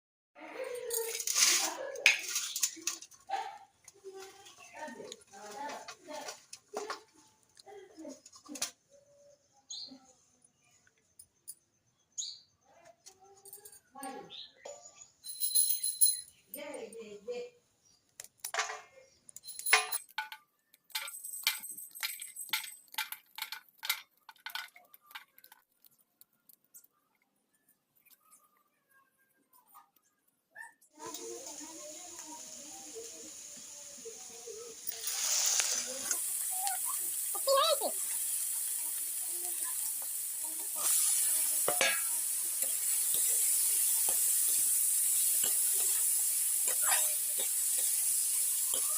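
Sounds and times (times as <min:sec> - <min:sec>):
light metallic clinks and jingles: 0:00.5 - 0:01.7, 0:13.3 - 0:17.2, 0:19.3 - 0:25.6
food sizzling in a pan: 0:01.0 - 0:03.2, 0:31.0 - 0:48.9
utensil clinking against pan: 0:39.6 - 0:48.9.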